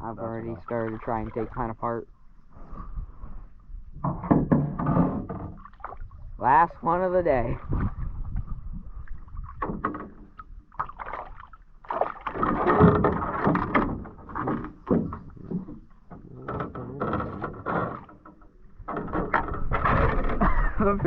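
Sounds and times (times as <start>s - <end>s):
knocks and scrapes on small boat: 0.0s - 6.2s, 6.9s - 21.0s.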